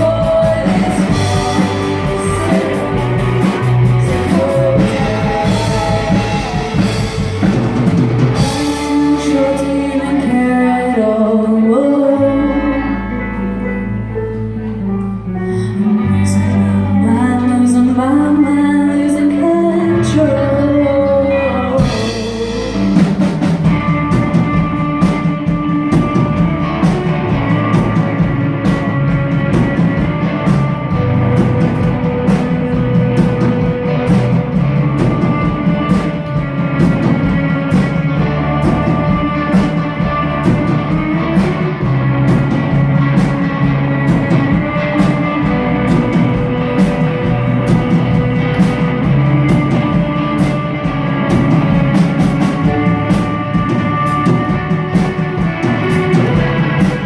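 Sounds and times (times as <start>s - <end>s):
drums: 0.0s - 57.0s
person singing: 0.0s - 57.0s
rock band playing: 0.0s - 57.0s.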